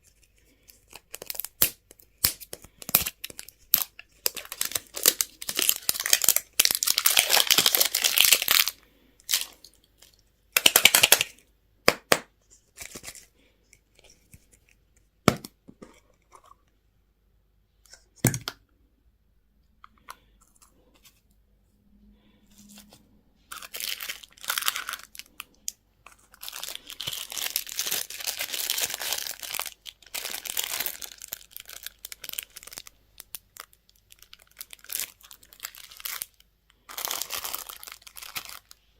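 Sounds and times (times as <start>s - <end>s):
wrappers tearing and crinkling: 0.3s - 9.7s, 23.5s - 25.4s, 26.3s - 38.8s.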